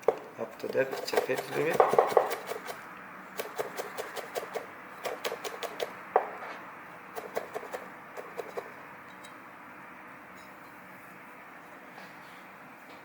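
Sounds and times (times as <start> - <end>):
knife chopping on cutting board: 0.8 - 2.7.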